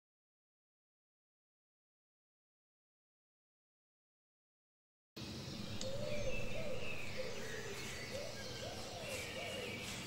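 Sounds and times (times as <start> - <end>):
birds chirping faintly: 5.2 - 10.0
low groaning call: 5.6 - 9.8.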